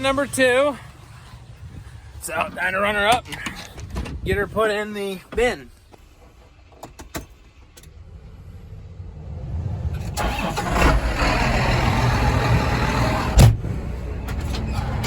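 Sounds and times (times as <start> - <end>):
engine starting and running: 5.4 - 15.0.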